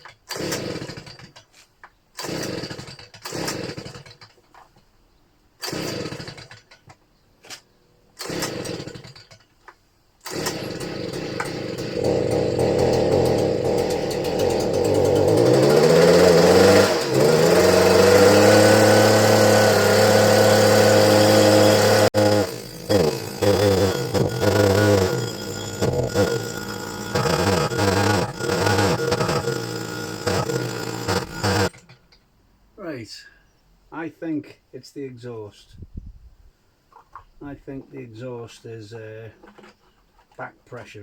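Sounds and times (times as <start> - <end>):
leaf blower engine revving: 10.2 - 31.8
recoil starter pulls: 10.2 - 32.2.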